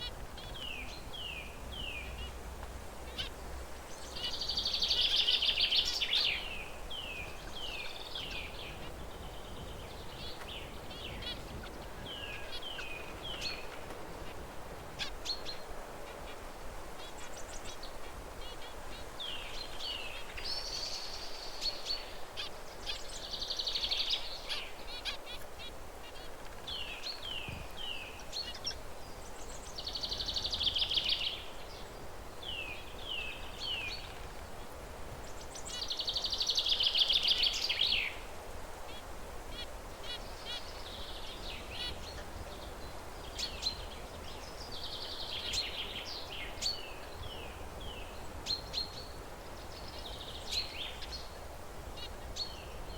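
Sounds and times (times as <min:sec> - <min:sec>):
steady background hiss: 0:00.0 - 0:52.9
finch singing: 0:39.5 - 0:51.3.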